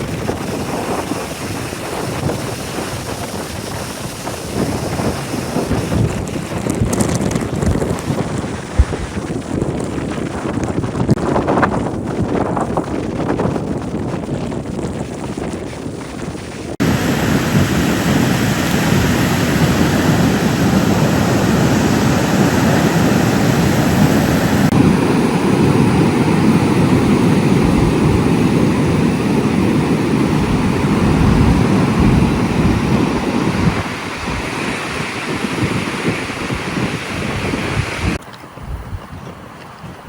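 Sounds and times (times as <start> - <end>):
ocean surf breaking: 0.0 - 7.0, 16.7 - 38.6
wind buffeting microphone: 0.0 - 40.0.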